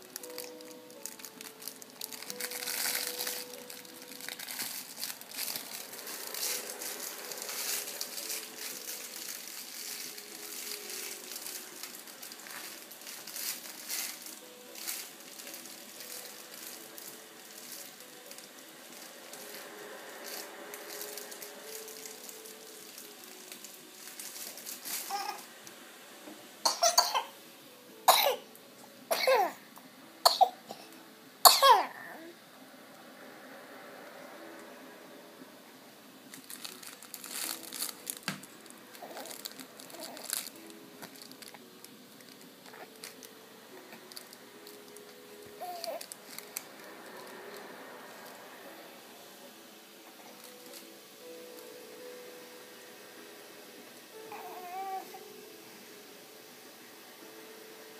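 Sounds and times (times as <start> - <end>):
faint toy tune: 0.0 - 25.6, 38.8 - 57.9
infant coughing: 26.6 - 27.4, 28.1 - 28.5, 29.1 - 29.6, 31.5 - 32.3.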